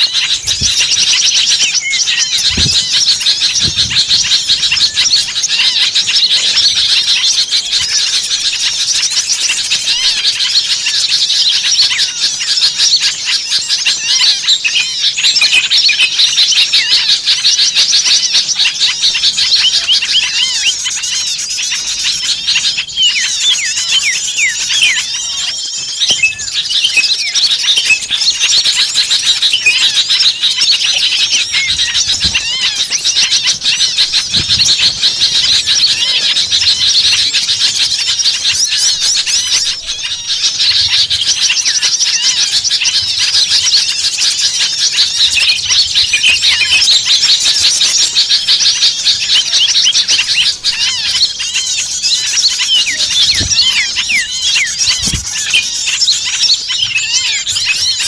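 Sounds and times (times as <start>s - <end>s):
flock of songbirds chirping: 0.0s - 58.0s.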